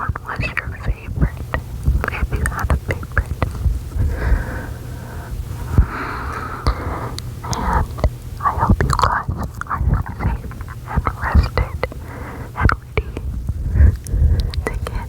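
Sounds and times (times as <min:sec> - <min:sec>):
wet mouth clicks: 0:00.0 - 0:03.7, 0:05.7 - 0:15.0
close-up whispering: 0:00.0 - 0:15.0
steady low hum: 0:00.0 - 0:15.0
breaths: 0:04.0 - 0:08.0, 0:11.9 - 0:12.7, 0:13.6 - 0:15.0.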